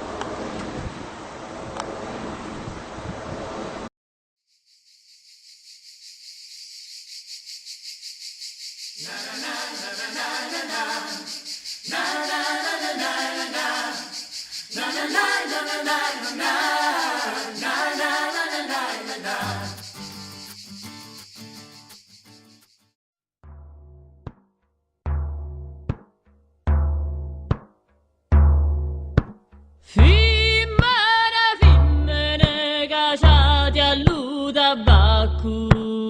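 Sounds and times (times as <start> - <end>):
high fluttering hiss: 4.5 - 23.0
unaccompanied voices singing: 9.0 - 20.1.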